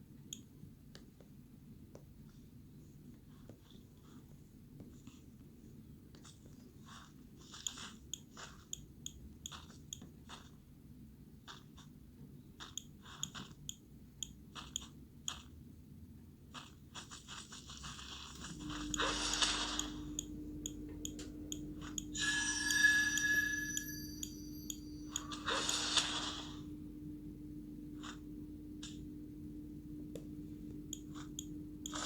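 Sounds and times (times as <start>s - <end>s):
low steady hum: 17.8s - 32.0s
light clicks and ticks: 18.4s - 22.2s, 30.1s - 32.0s.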